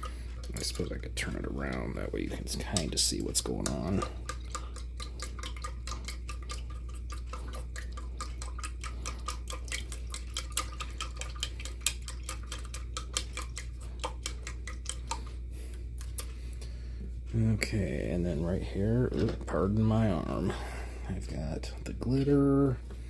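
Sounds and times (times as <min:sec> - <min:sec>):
utensil stirring liquid clicking: 0:00.0 - 0:16.6.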